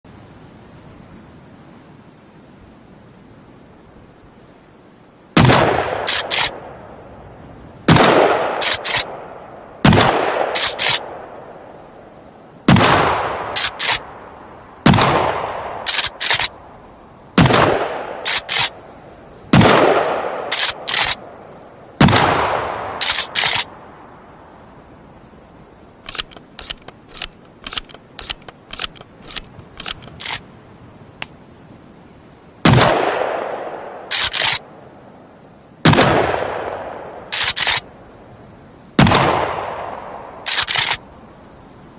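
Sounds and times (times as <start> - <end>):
shotgun blasts: 5.4 - 6.6, 7.9 - 9.2, 9.8 - 11.1, 12.7 - 14.0, 14.8 - 16.5, 17.4 - 18.7, 19.5 - 21.2, 22.0 - 23.7, 32.6 - 34.6, 35.8 - 37.8, 39.0 - 40.0
shotgun action clicking: 6.1 - 6.6, 8.6 - 9.1, 10.6 - 11.0, 13.6 - 14.0, 15.9 - 16.5, 18.3 - 18.7, 20.5 - 21.2, 23.0 - 23.7, 26.0 - 30.4, 34.1 - 34.6, 37.3 - 37.8, 40.5 - 41.0.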